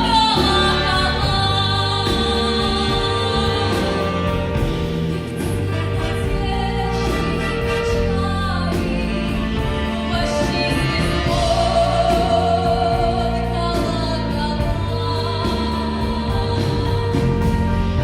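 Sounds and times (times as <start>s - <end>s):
woman singing folk song: 0.0s - 4.7s, 5.4s - 18.0s
orchestra accompaniment: 0.0s - 18.0s.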